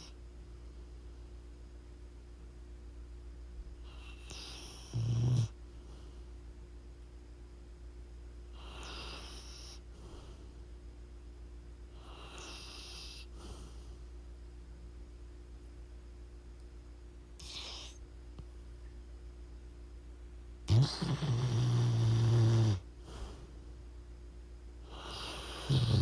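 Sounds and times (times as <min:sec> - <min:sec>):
dog snoring: 0:03.8 - 0:05.6, 0:08.5 - 0:10.4, 0:11.9 - 0:13.8, 0:17.4 - 0:18.0, 0:20.6 - 0:23.4, 0:24.8 - 0:26.0.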